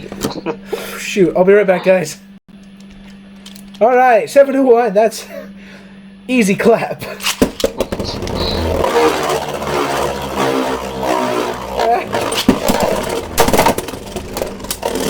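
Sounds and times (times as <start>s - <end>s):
spinning tops whirring: 7.3s - 15.0s.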